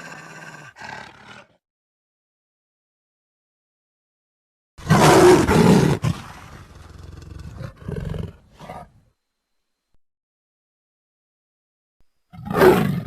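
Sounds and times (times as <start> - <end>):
wolf snarling and growling: 0.0 - 1.6, 4.8 - 9.0, 12.4 - 13.0.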